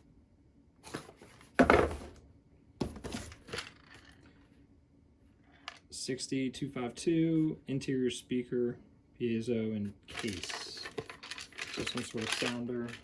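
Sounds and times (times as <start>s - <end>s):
cardboard boxes rustling: 0.9s - 2.2s, 2.8s - 3.7s
thud on cardboard: 1.6s - 2.2s.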